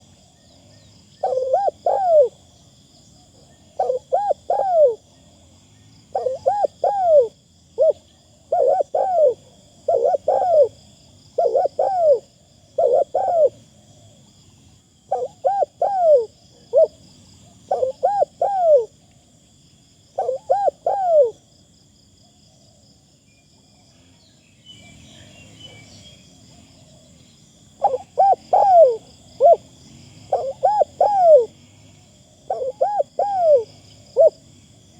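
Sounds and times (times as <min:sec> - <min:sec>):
dove cooing: 0:01.2 - 0:02.5, 0:03.7 - 0:05.1, 0:06.1 - 0:14.2, 0:15.1 - 0:19.0, 0:20.2 - 0:21.5, 0:27.8 - 0:31.6, 0:32.5 - 0:34.5.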